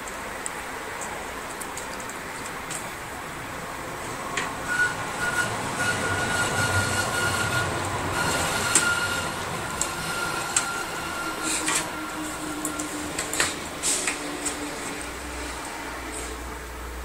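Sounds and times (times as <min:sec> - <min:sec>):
cables and connectors clicking: 0:00.0 - 0:02.9, 0:09.8 - 0:10.8, 0:11.4 - 0:11.9, 0:12.6 - 0:15.0.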